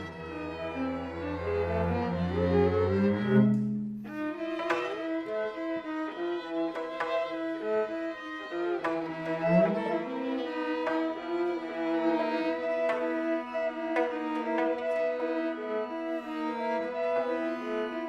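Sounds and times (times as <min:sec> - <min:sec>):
bowed strings music: 0:00.0 - 0:18.0.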